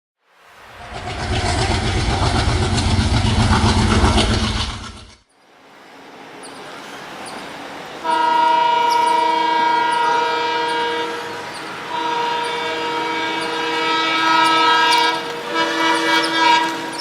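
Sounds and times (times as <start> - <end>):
train rumble: 0.5 - 5.2, 6.2 - 17.0
locomotive horn blast: 8.0 - 17.0.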